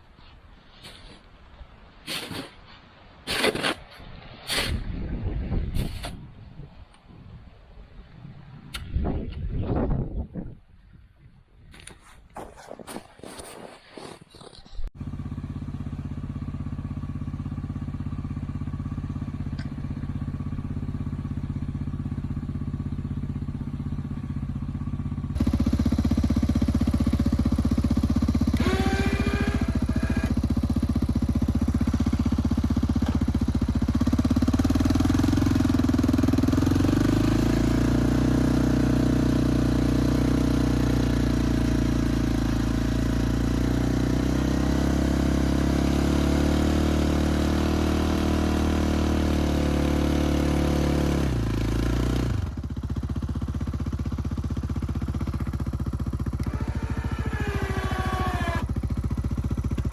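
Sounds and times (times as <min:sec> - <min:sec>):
snow-clearing machine engine: 0:15.0 - 0:59.9.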